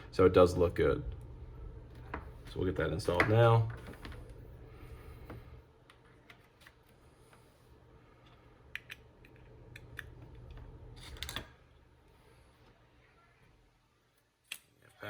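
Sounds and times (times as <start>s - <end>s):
low hum: 0.0s - 3.1s.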